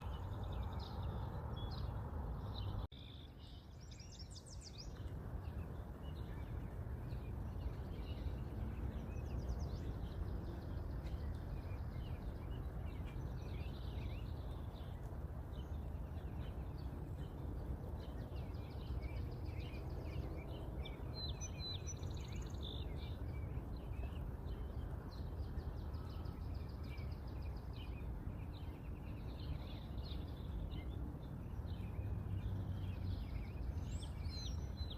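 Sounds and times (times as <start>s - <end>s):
birds chirping and trilling: 0.0s - 34.9s
low outdoor rumble: 0.0s - 34.9s.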